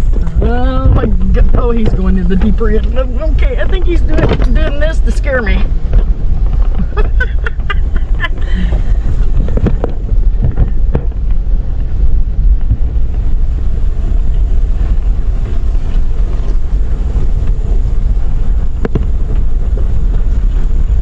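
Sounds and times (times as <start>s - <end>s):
truck low rumble: 0.0s - 21.0s
wind buffeting microphone: 0.0s - 21.0s.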